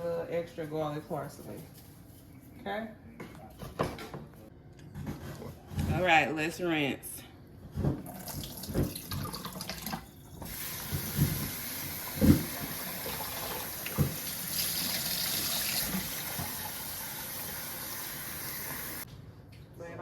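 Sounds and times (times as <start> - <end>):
tap running into sink: 8.1 - 16.9.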